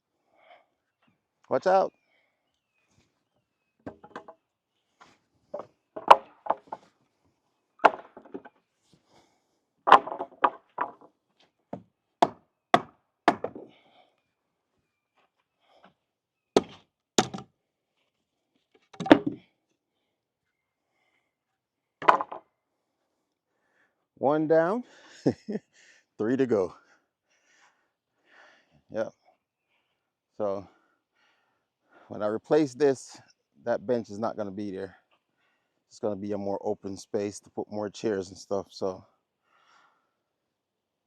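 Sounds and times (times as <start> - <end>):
wooden knocks and whacks: 3.8 - 4.4, 5.5 - 6.9, 7.8 - 8.6, 9.8 - 11.1, 11.7 - 13.7, 16.6 - 17.5, 18.9 - 19.4, 22.0 - 22.4.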